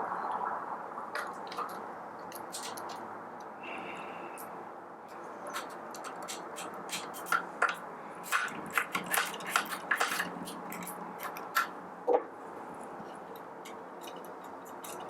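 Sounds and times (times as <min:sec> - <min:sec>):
screwdriver clicks and metallic clinks: 0:01.2 - 0:03.0, 0:13.1 - 0:15.0.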